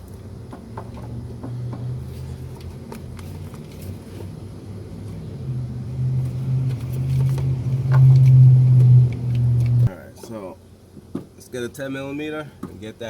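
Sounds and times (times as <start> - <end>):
low engine-like rumble: 0.0 - 10.0.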